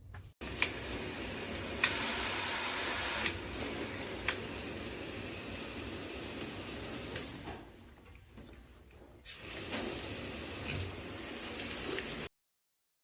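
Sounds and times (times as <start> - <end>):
water spraying from shower head: 0.4 - 7.5, 9.3 - 12.3.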